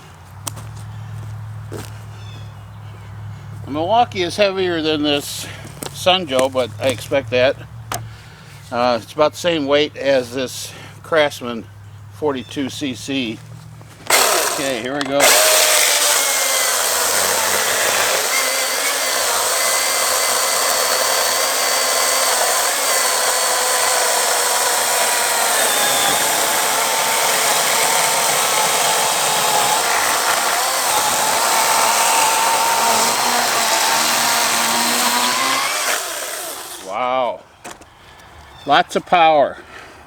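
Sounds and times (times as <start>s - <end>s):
chainsaw cutting log: 14.0s - 37.0s.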